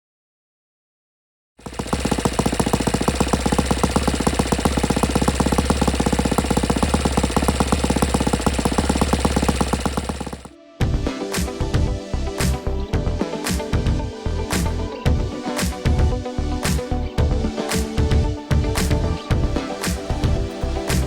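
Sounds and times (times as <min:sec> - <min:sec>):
model aircraft engine running: 0:01.6 - 0:10.5.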